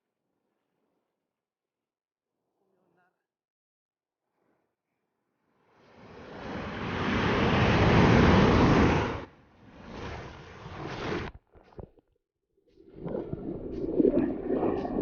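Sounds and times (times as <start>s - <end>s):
wave breaking on shore: 5.9s - 11.3s.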